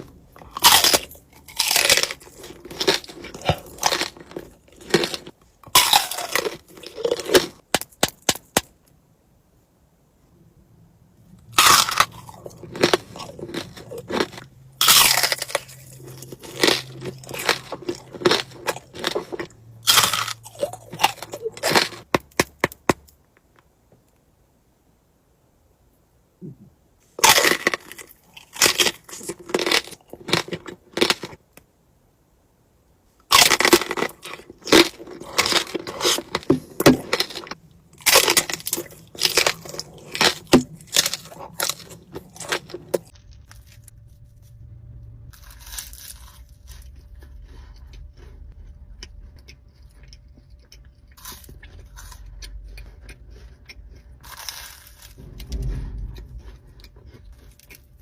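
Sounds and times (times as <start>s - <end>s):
crunchy chewing: 0.0s - 8.6s, 11.5s - 22.9s, 27.2s - 31.4s, 33.2s - 44.5s, 45.3s - 58.0s
low steady hum: 0.0s - 58.0s.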